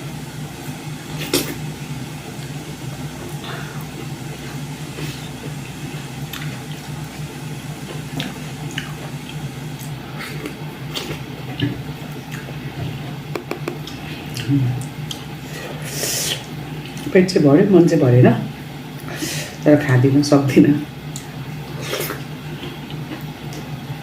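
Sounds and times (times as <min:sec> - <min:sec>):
steady low hum: 0:00.0 - 0:24.0
food squelching and chewing: 0:02.4 - 0:07.2, 0:07.8 - 0:17.1, 0:21.1 - 0:23.8.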